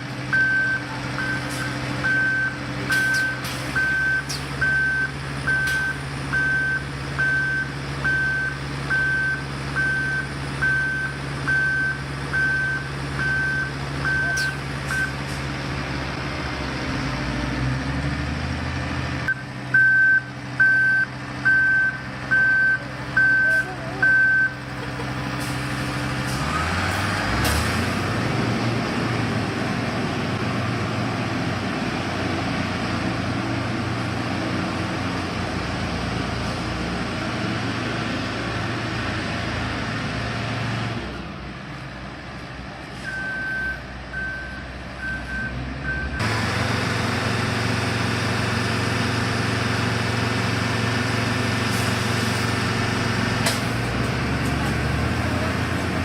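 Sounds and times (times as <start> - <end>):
engine running steadily: 0.0 - 56.0
reversing alarm beeping: 0.3 - 15.2, 19.3 - 24.6, 43.1 - 46.3.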